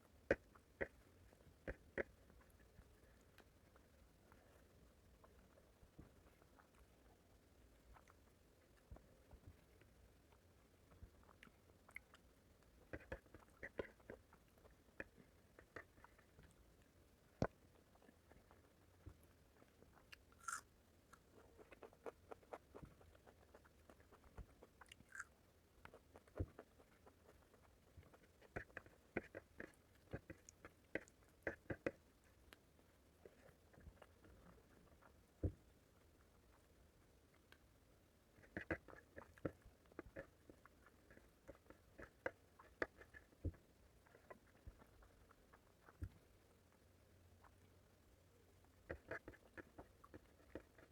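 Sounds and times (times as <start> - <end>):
chewing food: 0.0 - 50.9
food crunching: 11.2 - 27.4.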